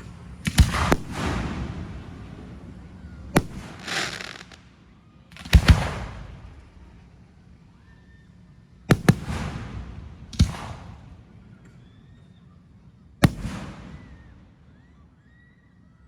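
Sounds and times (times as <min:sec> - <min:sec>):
fireworks bangs: 0:00.0 - 0:04.7, 0:05.3 - 0:06.7, 0:08.9 - 0:11.1, 0:13.2 - 0:14.2
rumble after bangs: 0:00.0 - 0:04.7, 0:08.9 - 0:12.0.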